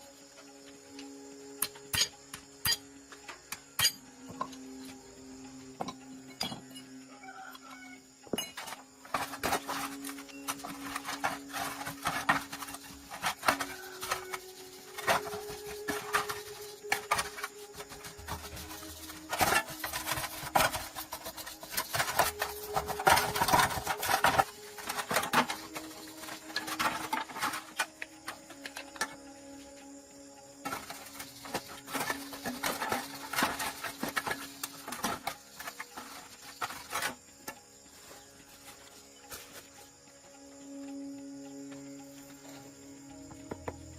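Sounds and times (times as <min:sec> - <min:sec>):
irregular knocks and taps: 0:43.1 - 0:43.9.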